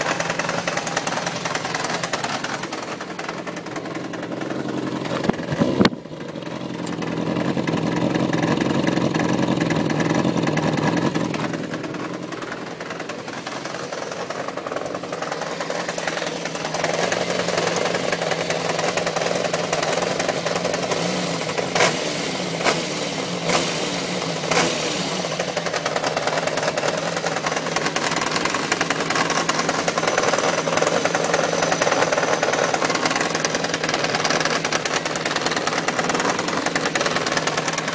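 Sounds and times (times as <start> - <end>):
motorcycle engine knocking: 0.0 - 37.9.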